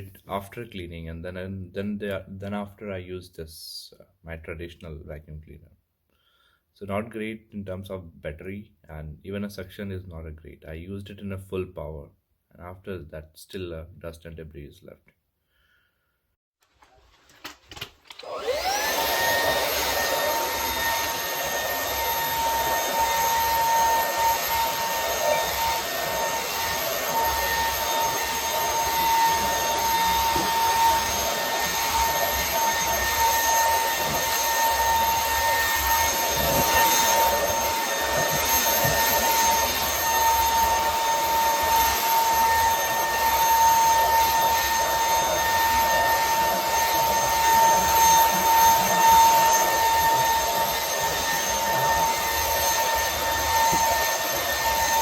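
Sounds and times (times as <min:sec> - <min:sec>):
vacuum motor whine: 0:18.0 - 0:55.0.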